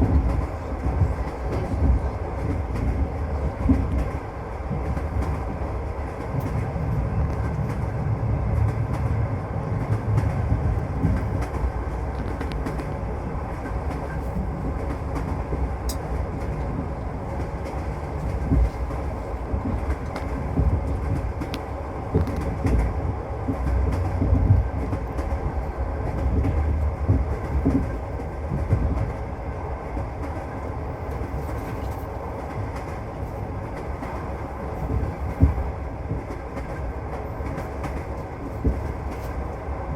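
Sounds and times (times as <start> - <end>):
train rumble inside carriage: 0.0 - 39.9
wheels knocking on rails: 13.6 - 29.2, 34.8 - 39.3.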